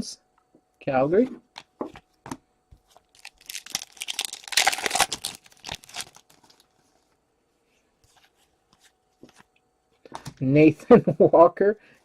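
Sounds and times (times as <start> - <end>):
foil wrapper tearing and crinkling: 3.0 - 6.8.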